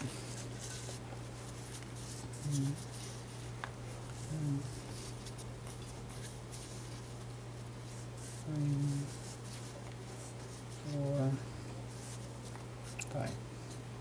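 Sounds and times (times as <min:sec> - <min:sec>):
low electrical hum: 0:00.0 - 0:14.0
man humming: 0:02.4 - 0:02.8, 0:04.2 - 0:04.8, 0:08.4 - 0:09.1.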